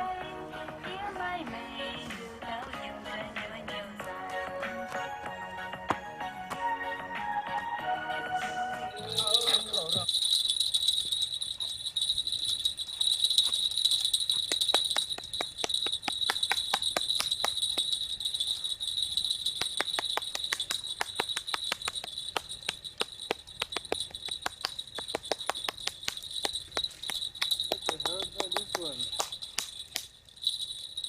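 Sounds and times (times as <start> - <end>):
high-pitched insect trill: 9.0 - 31.0.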